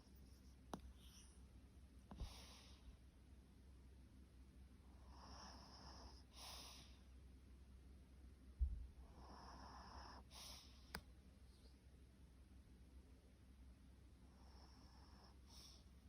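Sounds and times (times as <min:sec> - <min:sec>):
dog snoring: 0:04.9 - 0:07.0, 0:09.0 - 0:10.8, 0:14.3 - 0:15.8.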